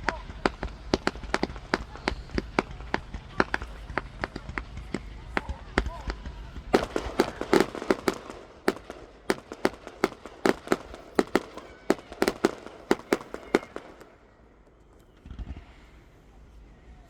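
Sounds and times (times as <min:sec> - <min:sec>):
fireworks bangs: 0:00.0 - 0:16.1.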